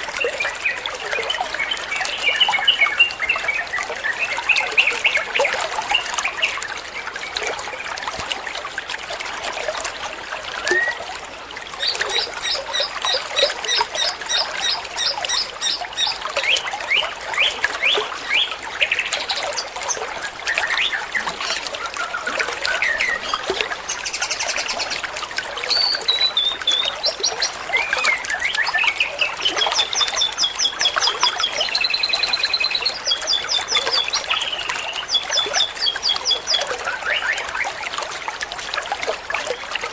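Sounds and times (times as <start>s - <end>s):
bird chirping and warbling: 11.8s - 19.8s, 25.7s - 37.6s.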